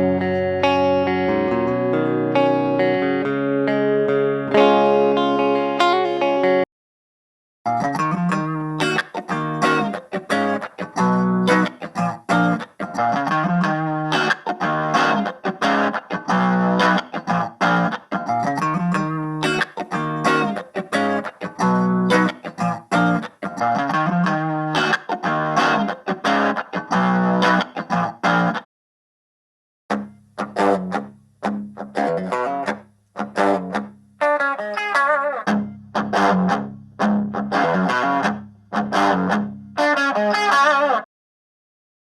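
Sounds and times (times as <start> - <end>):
electric guitar riff: 0.0 - 6.6, 7.7 - 28.6, 29.9 - 41.0.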